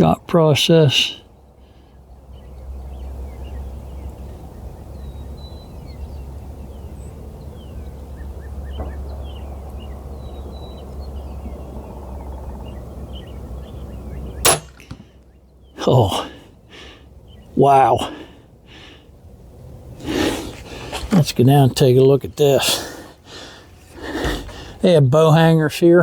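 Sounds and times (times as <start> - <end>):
small birds chirping: 0.0 - 26.0
crossbow firing snap: 14.4 - 15.1.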